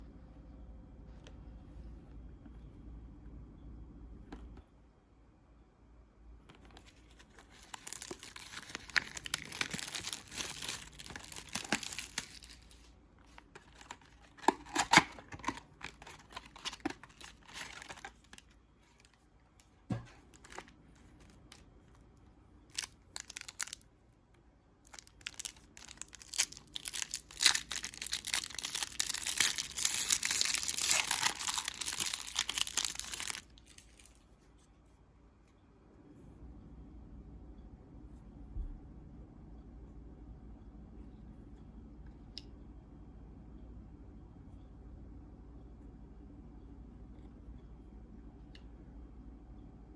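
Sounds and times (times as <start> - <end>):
packaging tearing and crinkling: 6.8 - 19.2, 20.3 - 21.6, 22.7 - 23.8, 24.9 - 34.2.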